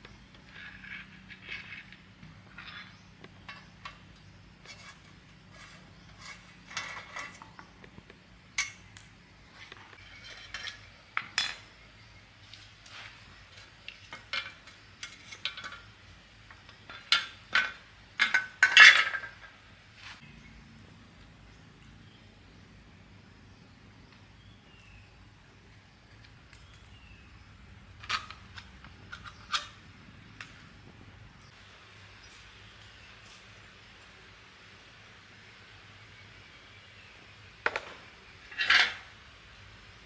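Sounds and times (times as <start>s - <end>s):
metal tools clinking: 0.3s - 7.8s, 9.9s - 11.8s, 13.6s - 16.0s, 16.8s - 19.5s, 38.5s - 39.1s.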